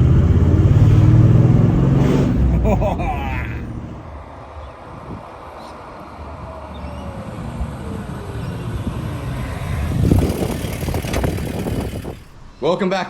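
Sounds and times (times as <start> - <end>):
motor vehicle running: 0.0 - 4.1, 7.5 - 12.4.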